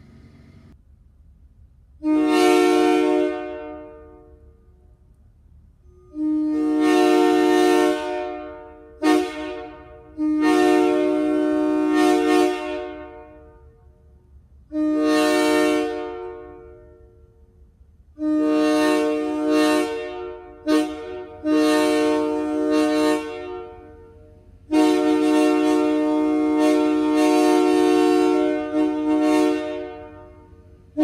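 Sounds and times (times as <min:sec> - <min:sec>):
locomotive air horn blasts: 0:02.0 - 0:04.9, 0:05.8 - 0:31.0.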